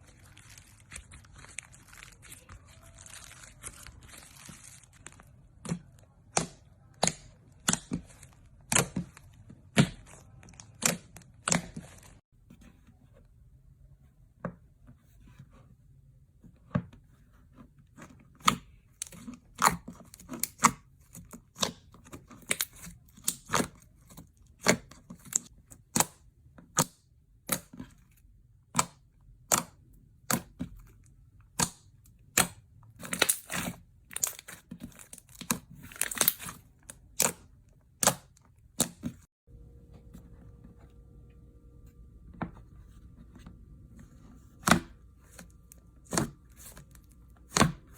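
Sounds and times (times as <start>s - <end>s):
sharp cracks and snaps: 31.6s - 37.4s
faint steady hum: 39.5s - 47.9s.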